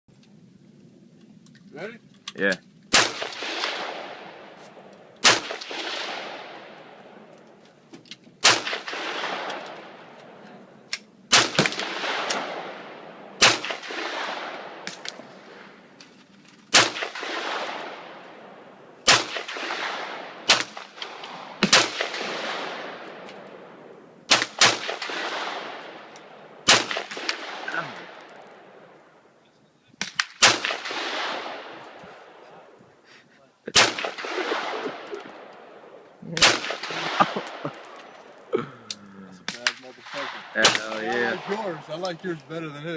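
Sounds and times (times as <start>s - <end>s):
rifle shots echoing: 2.9s - 7.6s, 8.4s - 16.1s, 16.7s - 29.2s, 30.0s - 32.8s, 33.7s - 38.5s, 39.4s - 42.5s.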